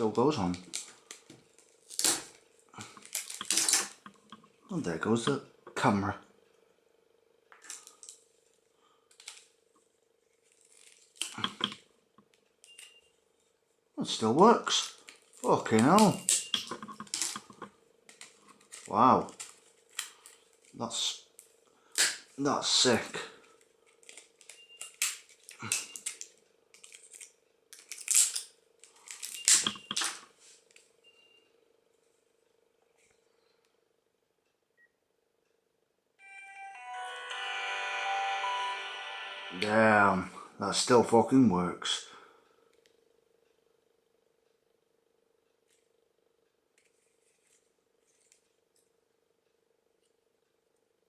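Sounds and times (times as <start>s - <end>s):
faint steady hum: 0.0s - 51.0s
snips and crunches of plastic: 0.5s - 4.4s, 9.1s - 9.6s, 10.4s - 11.8s, 14.8s - 20.8s, 21.9s - 22.3s, 23.5s - 30.9s.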